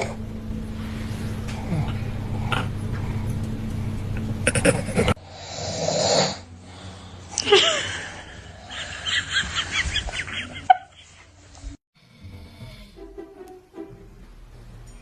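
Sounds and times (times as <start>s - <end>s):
rasping snore: 4.4s - 6.5s.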